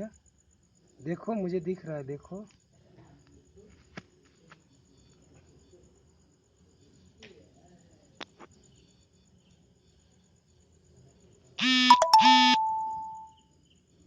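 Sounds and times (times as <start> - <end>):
electronic buzzing beeps: 11.6 - 13.3
electronic tone: 11.6 - 13.3.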